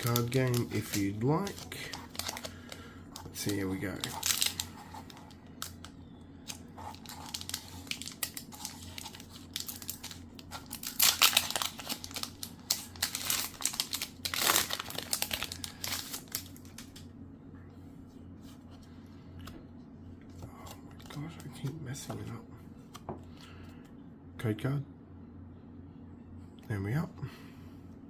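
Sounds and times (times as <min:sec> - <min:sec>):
foil wrapper crinkling and tearing: 0:00.0 - 0:17.0.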